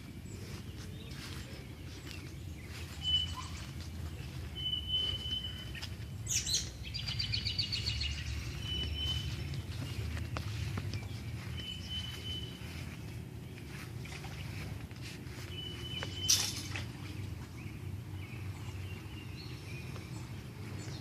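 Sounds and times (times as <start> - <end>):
birds singing and calling: 0.0 - 21.0.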